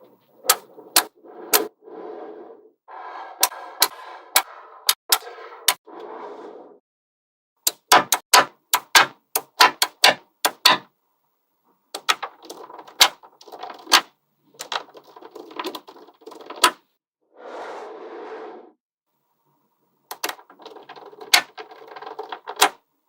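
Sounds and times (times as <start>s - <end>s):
magnetic balls rattling: 20.1s - 22.8s.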